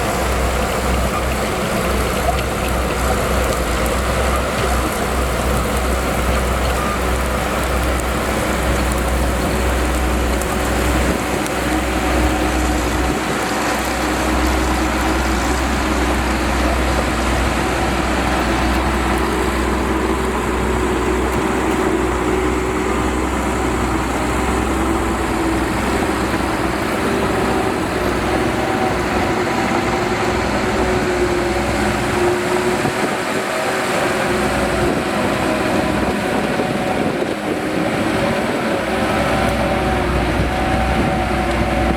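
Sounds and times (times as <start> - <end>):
bulldozer diesel engine running: 0.0 - 41.9.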